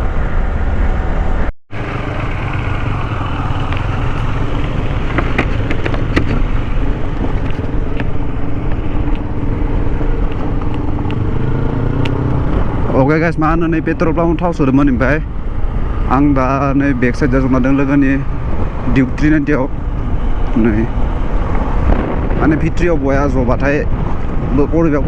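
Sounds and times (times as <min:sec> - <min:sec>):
motorcycle engine running: 0:00.0 - 0:13.2
wind noise on microphone: 0:00.0 - 0:25.0.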